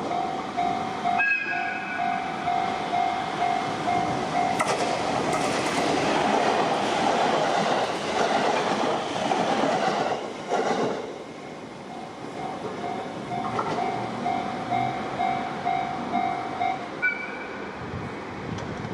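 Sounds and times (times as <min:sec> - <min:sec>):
level crossing warning bell: 0:00.0 - 0:04.8, 0:11.8 - 0:17.6
train wheel and rail noise: 0:00.0 - 0:18.9.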